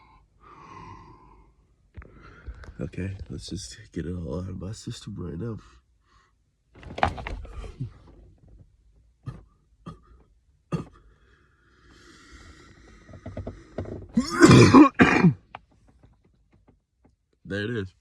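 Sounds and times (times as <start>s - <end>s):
man coughing up phlegm: 9.2s - 10.1s, 10.7s - 11.0s, 14.2s - 15.4s.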